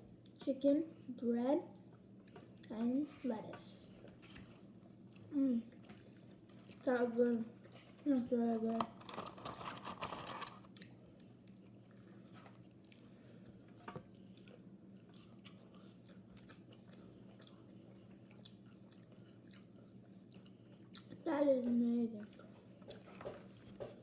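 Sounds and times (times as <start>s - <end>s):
low steady hum: 0.0s - 24.0s
person chewing food: 4.0s - 8.0s, 9.0s - 21.3s, 22.2s - 24.0s.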